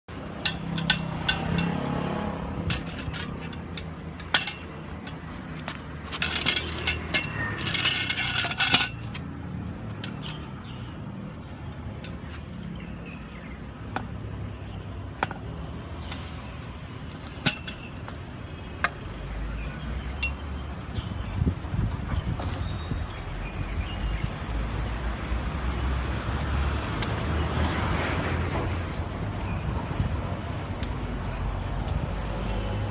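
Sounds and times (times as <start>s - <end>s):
metal parts clicking and clinking: 0.3s - 10.7s, 17.1s - 18.2s
rattling clatter: 0.4s - 9.3s.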